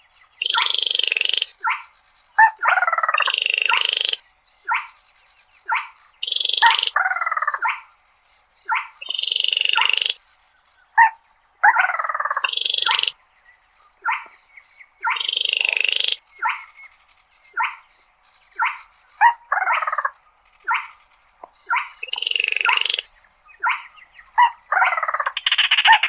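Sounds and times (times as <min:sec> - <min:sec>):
crake rattling calls: 0:00.0 - 0:26.0.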